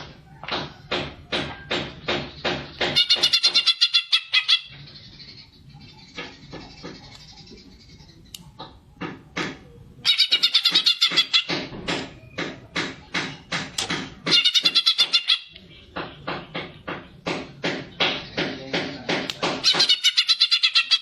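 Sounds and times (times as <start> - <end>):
bird singing harsh chattering notes: 2.0 - 9.0, 10.0 - 21.0
fast high bird trills: 14.2 - 15.6.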